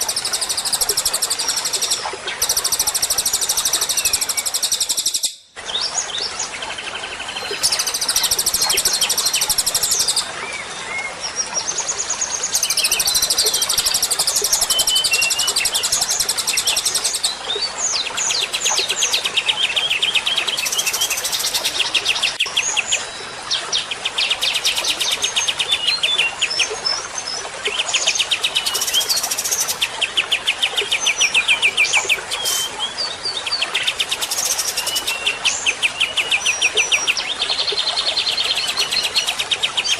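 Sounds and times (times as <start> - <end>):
songbird trilling and chirping: 31.0 - 32.9.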